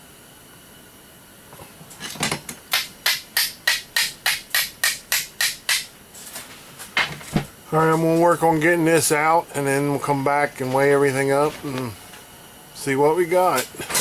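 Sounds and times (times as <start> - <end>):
hammer blows on metal parts: 2.6 - 6.0.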